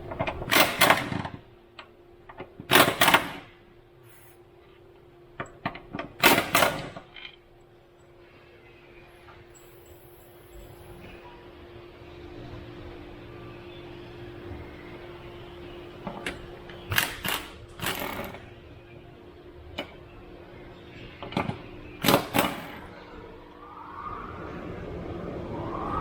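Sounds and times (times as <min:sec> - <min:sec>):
low hum: 0:23.4 - 0:26.0.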